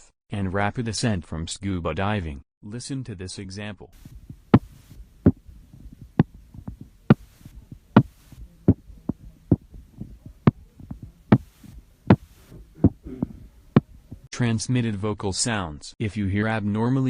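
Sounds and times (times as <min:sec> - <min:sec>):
sharp crackles with heartbeat: 0:04.0 - 0:14.3.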